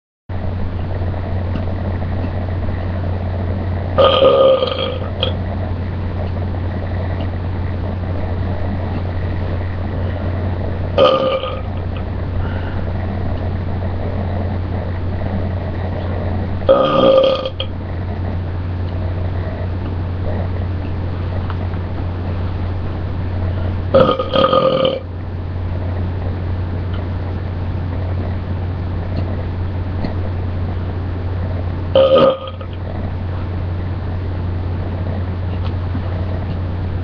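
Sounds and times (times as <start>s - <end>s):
person belching loudly: 4.0s - 5.4s, 11.0s - 11.8s, 16.7s - 17.7s, 23.9s - 25.0s, 32.0s - 32.7s.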